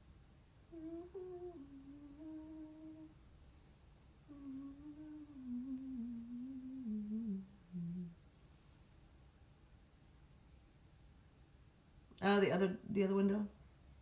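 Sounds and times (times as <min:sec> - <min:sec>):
woman humming a slow tune: 0:00.7 - 0:03.2, 0:04.2 - 0:08.2.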